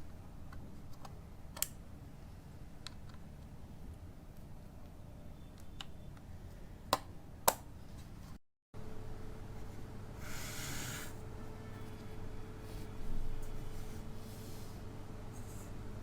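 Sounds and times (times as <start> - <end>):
faint steady hum: 0.0 - 16.0
brief hiss: 10.2 - 11.2.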